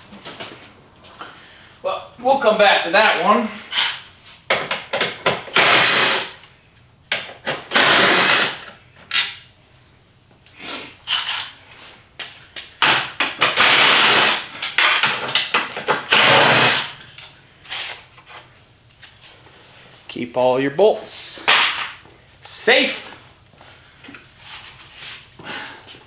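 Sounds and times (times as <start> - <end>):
handheld power tool running: 5.5 - 6.4, 7.7 - 8.7, 13.6 - 14.6, 16.1 - 17.0.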